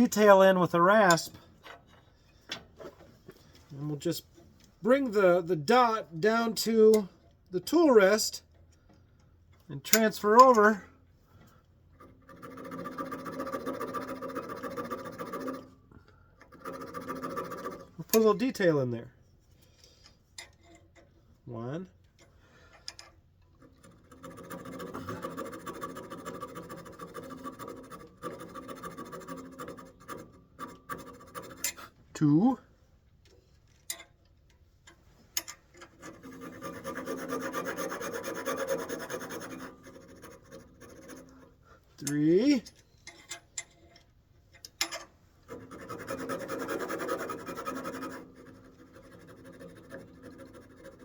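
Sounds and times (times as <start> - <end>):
hand rasp scraping wood: 12.0 - 15.8, 16.5 - 18.0, 23.7 - 32.0, 35.9 - 41.8, 45.4 - 51.0.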